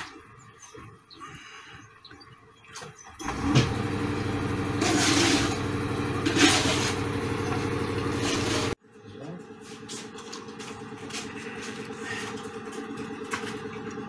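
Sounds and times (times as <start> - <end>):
vehicle engine running: 3.2 - 14.0.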